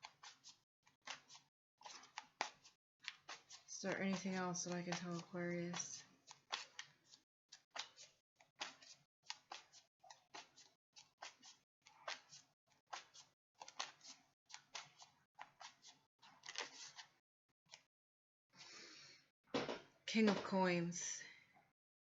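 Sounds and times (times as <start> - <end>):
cards being shuffled: 0.0 - 17.1.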